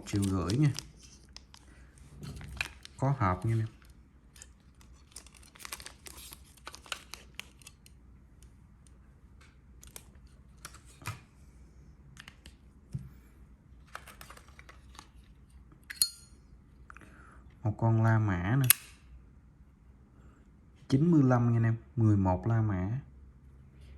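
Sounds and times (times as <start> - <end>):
sharp metallic click ringing: 15.9 - 16.3.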